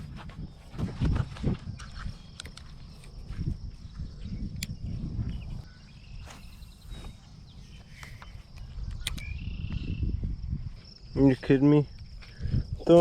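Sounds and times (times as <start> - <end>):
high insect drone: 0.0 - 13.0
sharp clicks: 2.3 - 2.7, 7.9 - 9.4.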